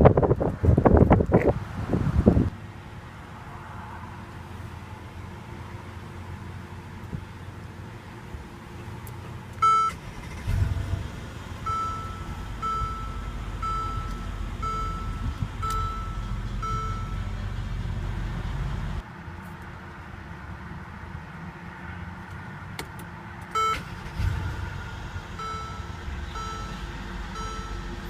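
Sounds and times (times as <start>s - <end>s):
car engine starting and idling: 0.0s - 19.1s, 22.2s - 28.0s
electronic warning chime: 9.6s - 10.0s, 11.6s - 17.3s, 23.6s - 23.9s, 25.4s - 28.0s.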